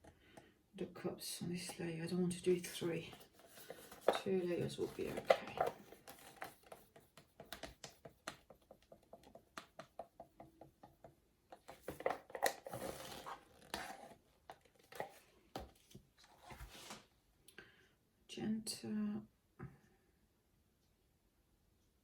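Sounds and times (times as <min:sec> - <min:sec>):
plastic paint bottles clicking: 0:03.1 - 0:10.9.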